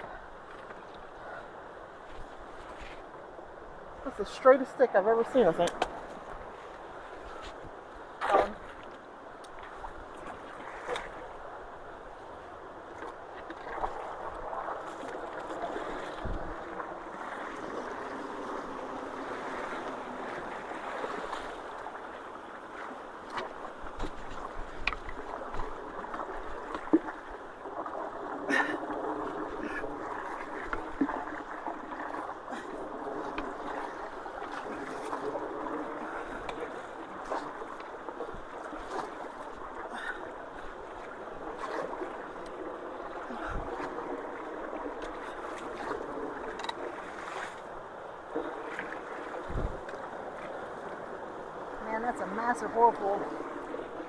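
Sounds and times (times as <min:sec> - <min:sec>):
creek water rushing into culvert: 0:00.0 - 0:54.0
small water splashes: 0:12.8 - 0:54.0.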